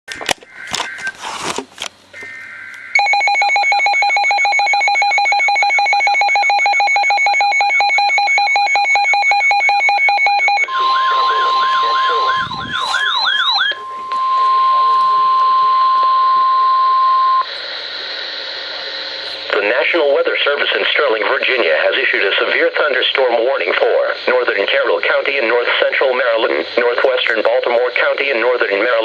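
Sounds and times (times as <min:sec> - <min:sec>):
pulsing electronic alarm: 0:00.4 - 0:01.2, 0:02.1 - 0:20.2
swooping siren chirps: 0:00.4 - 0:01.2, 0:02.1 - 0:17.8
steady warning tone: 0:02.1 - 0:29.0
raspy digital header tones: 0:02.2 - 0:20.6.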